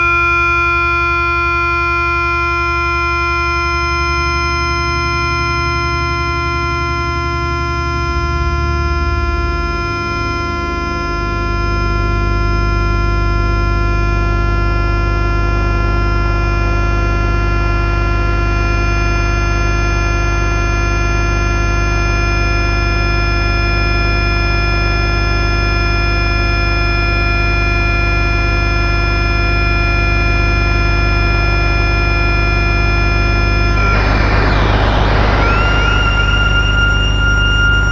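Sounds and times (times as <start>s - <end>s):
buzzing electronic synthesizer drone: 29.6s - 37.9s
deep low hum: 33.3s - 37.9s.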